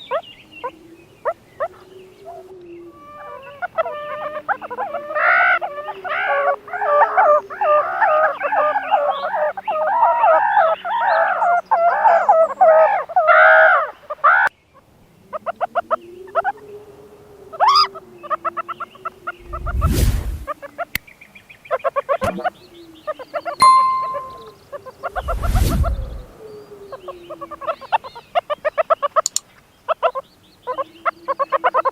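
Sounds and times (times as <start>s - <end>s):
short chirps: 23.6s - 24.6s.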